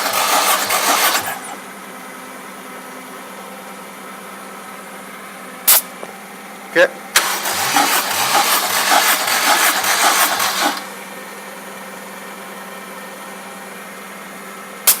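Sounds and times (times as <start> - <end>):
engine cranking on starter motor: 0.0 - 1.6, 7.1 - 11.0.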